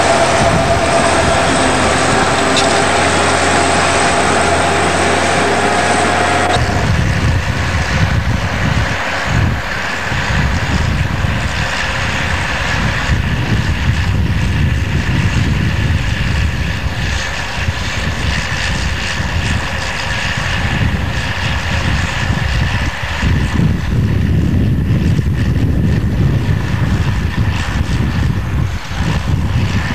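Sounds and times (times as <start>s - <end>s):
bulldozer diesel engine: 0.0s - 22.6s.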